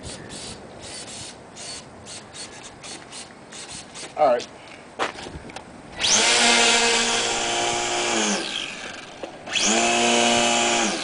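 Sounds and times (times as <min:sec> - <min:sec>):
model plane motor whining: 0:06.0 - 0:11.0.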